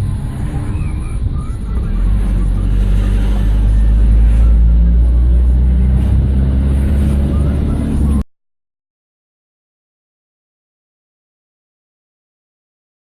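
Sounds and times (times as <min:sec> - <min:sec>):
heavy vehicle engine droning: 0:00.0 - 0:08.3.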